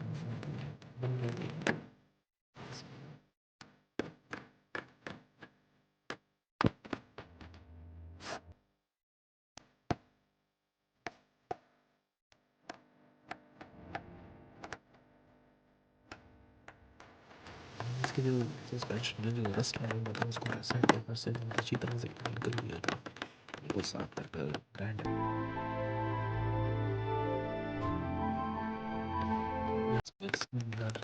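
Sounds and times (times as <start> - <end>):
sharp knocks and taps: 19.0 - 24.8.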